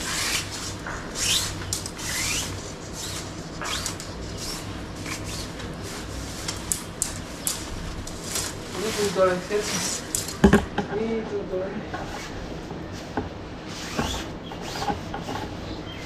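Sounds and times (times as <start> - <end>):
tent fabric rustling: 0.0 - 10.4
tent pole scraping: 0.0 - 10.4, 13.7 - 15.7.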